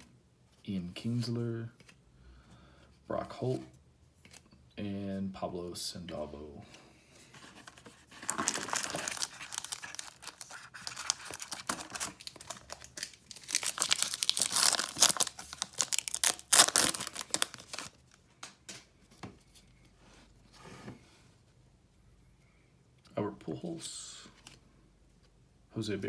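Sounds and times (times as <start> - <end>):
wrapper tearing and crinkling: 8.2 - 18.1.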